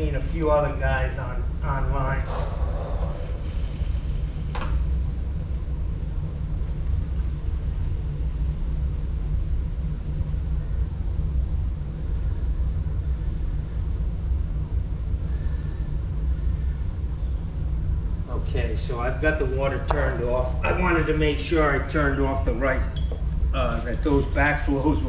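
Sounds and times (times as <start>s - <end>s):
electric water pump humming: 0.0s - 15.4s.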